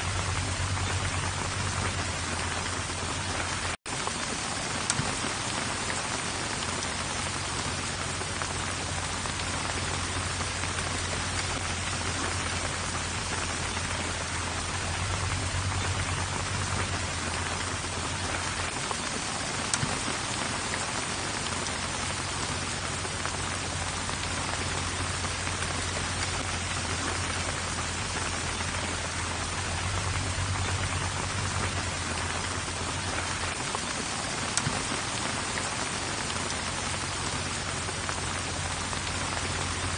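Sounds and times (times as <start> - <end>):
low wind rumble: 0.0 - 39.9
steady rain hissing: 0.0 - 39.9
drop ticks: 4.8 - 5.2, 19.7 - 20.0, 34.5 - 34.9.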